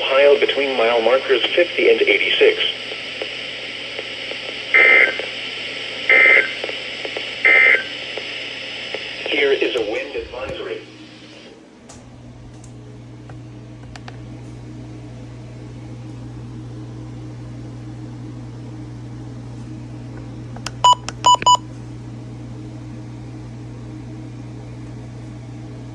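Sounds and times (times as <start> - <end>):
faint radio hiss: 0.0 - 11.6
low electrical hum: 0.0 - 25.9.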